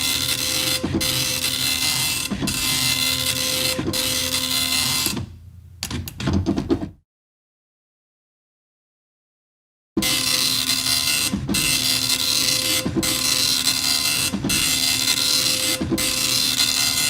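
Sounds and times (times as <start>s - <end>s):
dot matrix printer printing: 0.0s - 5.2s, 10.0s - 17.0s.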